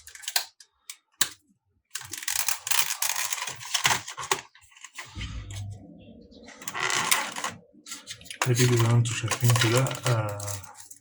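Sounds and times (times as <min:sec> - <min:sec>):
sharp plastic clicks: 0:00.0 - 0:04.4
packaging rustling and clattering: 0:02.0 - 0:05.1, 0:07.0 - 0:11.0.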